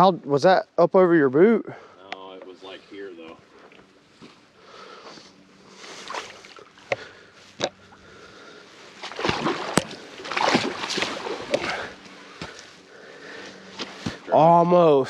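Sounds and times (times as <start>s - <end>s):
boots splashing through water: 5.8s - 7.7s, 8.9s - 12.8s.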